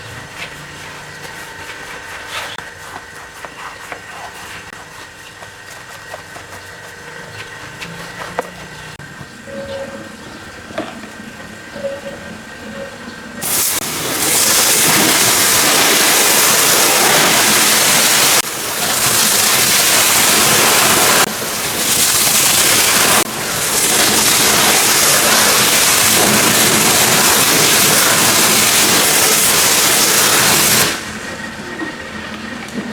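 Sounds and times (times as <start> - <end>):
steady hum: 6.2 - 18.9
pressure washer spraying: 13.4 - 31.2.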